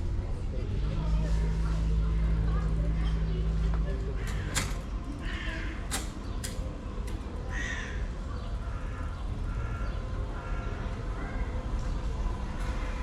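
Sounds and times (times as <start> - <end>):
low outdoor background noise: 0.0 - 13.0
crow cawing: 4.2 - 5.9, 7.5 - 11.5
sharp clicks: 5.9 - 7.2.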